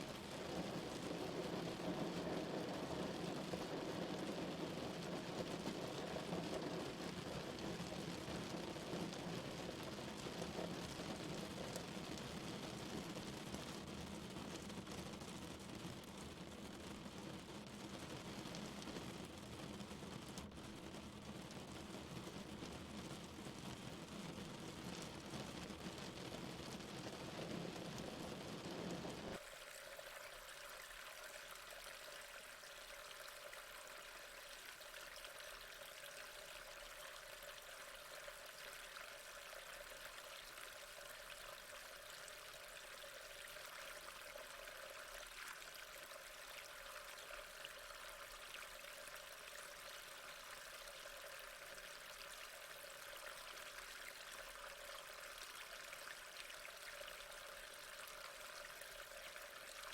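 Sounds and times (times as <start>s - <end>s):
heavy rain falling: 0.0s - 13.3s, 24.4s - 29.4s.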